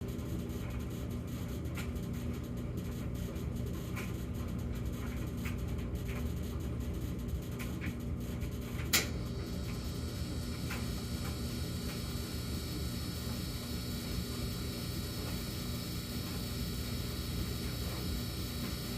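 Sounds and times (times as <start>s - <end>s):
dryer drone: 0.0s - 18.9s
high-pitched hum: 9.1s - 18.9s.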